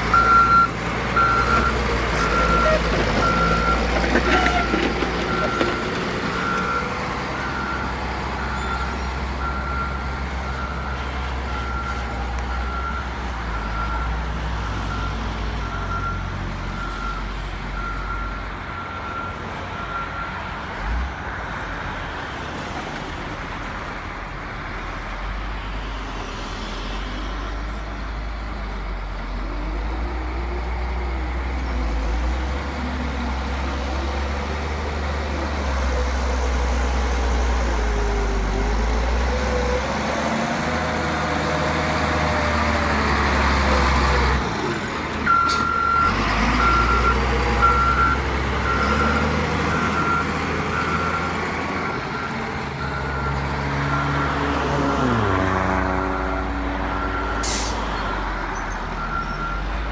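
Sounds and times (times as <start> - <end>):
heavy diesel machinery rumble: 0.0 - 20.9, 27.1 - 59.9
reversing alarm beeping: 0.1 - 14.2, 45.3 - 55.3, 56.0 - 59.8.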